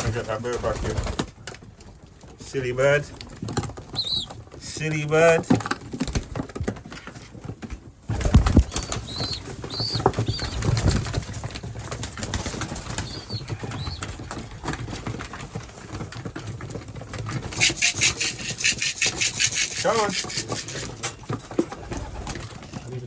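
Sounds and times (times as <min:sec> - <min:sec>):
pigeon wing flaps: 0:08.0 - 0:23.0.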